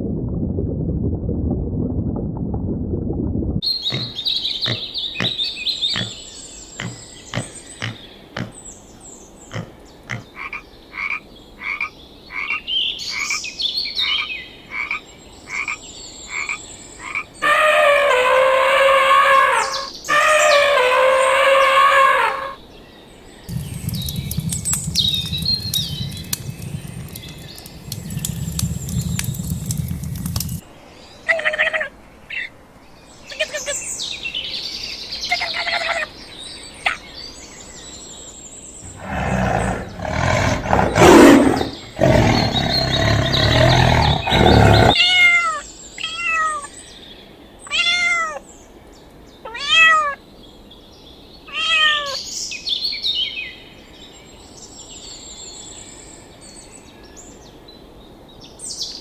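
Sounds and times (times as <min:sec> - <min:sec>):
low rumbling noise: 0:00.0 - 0:05.4, 0:23.5 - 0:30.7, 0:38.8 - 0:45.0
faint chirps: 0:03.6 - 0:08.6, 0:23.5 - 0:31.2
frogs croaking: 0:03.7 - 0:08.6, 0:09.5 - 0:12.6, 0:23.5 - 0:30.6
long loud animal calls: 0:17.4 - 0:22.6, 0:23.5 - 0:30.6, 0:38.9 - 0:45.2.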